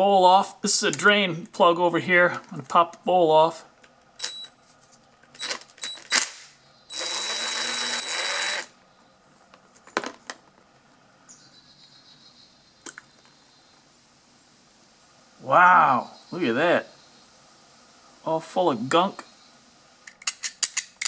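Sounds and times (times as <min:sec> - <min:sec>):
metal clicks and knocks of tools: 0:20.0 - 0:21.0.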